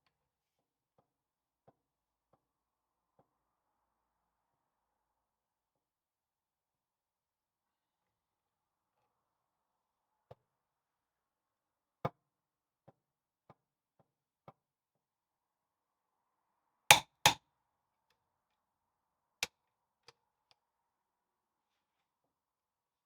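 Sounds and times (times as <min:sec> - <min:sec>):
light knocks and clicks of hand work: 0:16.9 - 0:17.4.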